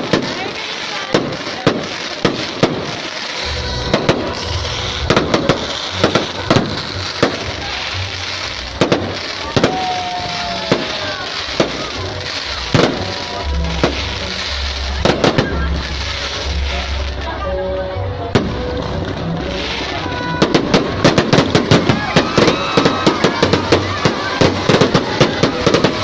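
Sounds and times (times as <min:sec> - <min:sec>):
crackling hiss: 0:00.0 - 0:17.4
fireworks bangs and pops: 0:00.0 - 0:17.4, 0:18.2 - 0:26.0.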